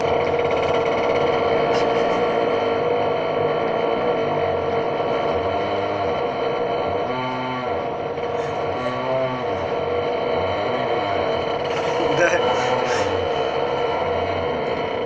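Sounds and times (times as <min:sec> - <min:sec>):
wheel squeaking: 0:00.0 - 0:15.0.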